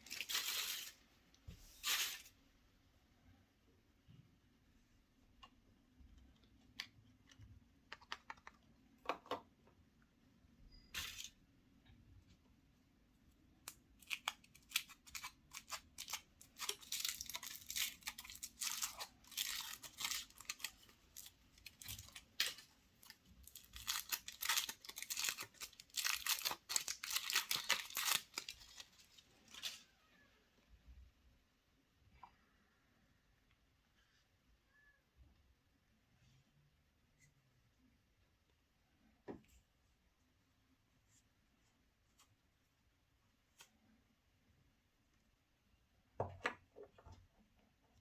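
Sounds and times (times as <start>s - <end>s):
foil wrapper crinkling: 14.0s - 29.8s.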